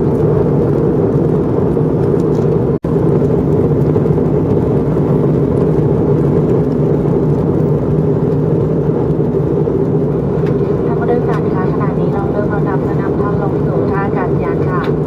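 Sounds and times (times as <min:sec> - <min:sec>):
airliner engine drone: 0:00.0 - 0:15.0.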